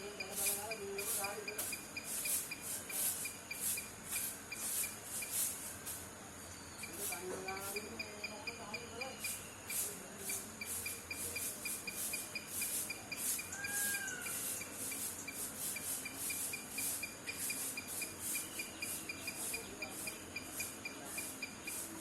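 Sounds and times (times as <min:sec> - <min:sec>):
insects chirping: 0:00.0 - 0:22.0
high hiss: 0:00.2 - 0:06.1.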